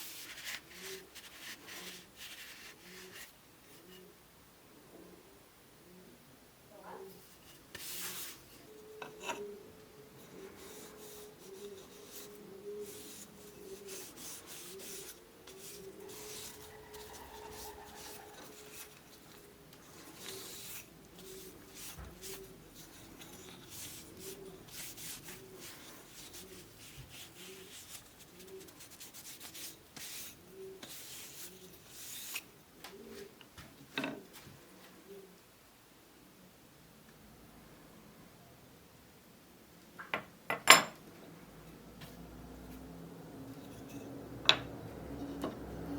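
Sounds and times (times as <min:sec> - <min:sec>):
hand sanding strokes: 0:10.3 - 0:32.4.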